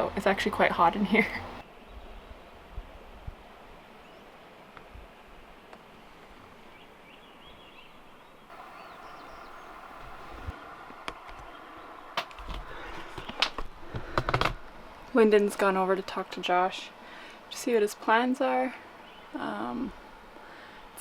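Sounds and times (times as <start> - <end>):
faint bird chirps: 6.7 - 10.5
background ambience: 8.5 - 17.6.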